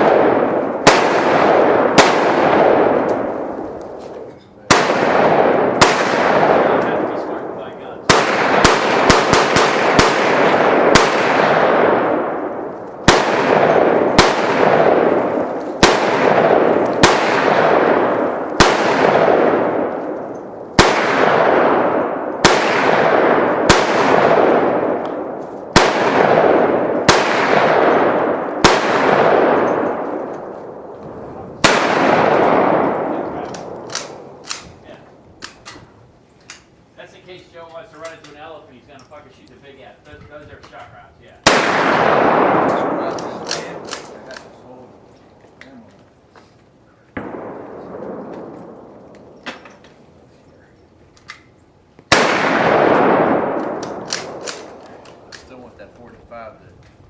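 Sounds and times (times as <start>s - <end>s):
gunshots with echoing rumble: 0.0s - 35.4s, 41.3s - 45.0s, 47.1s - 50.2s, 52.0s - 55.3s.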